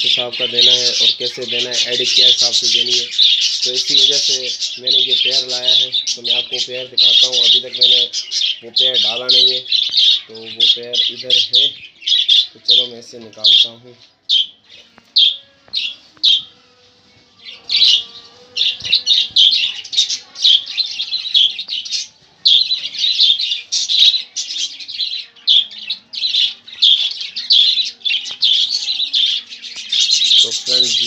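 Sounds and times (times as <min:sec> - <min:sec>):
budgerigars chirping: 0:00.0 - 0:16.5, 0:17.4 - 0:31.0.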